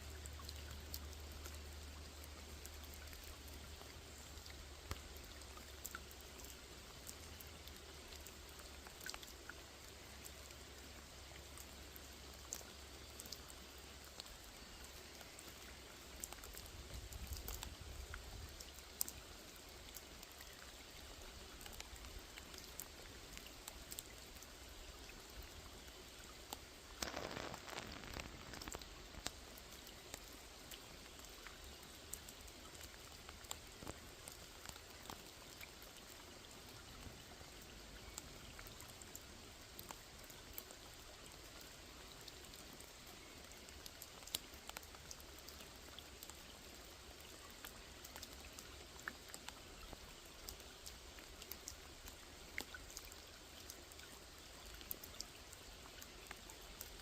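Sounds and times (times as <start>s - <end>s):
light rain on a pond: 0.0s - 57.0s
water drop ticks: 26.5s - 36.1s, 43.5s - 45.6s
louder rain rush: 27.0s - 29.0s.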